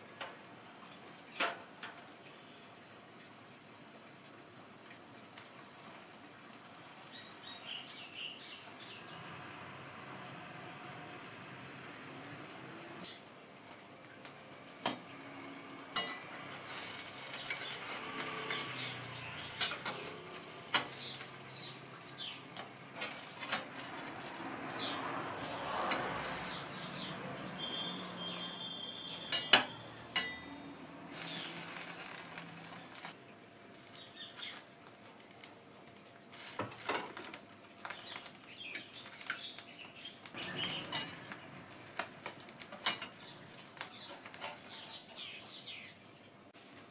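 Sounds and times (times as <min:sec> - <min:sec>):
pan sizzling: 0:00.0 - 0:45.4
utensils clinking against dishes: 0:15.9 - 0:21.4, 0:25.5 - 0:26.7, 0:28.1 - 0:33.0, 0:40.3 - 0:45.0.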